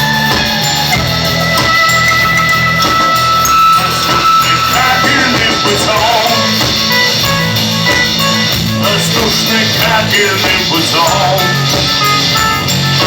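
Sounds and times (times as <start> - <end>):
live rock band playing: 0.0 - 13.0
held wavering guitar note: 0.6 - 8.6.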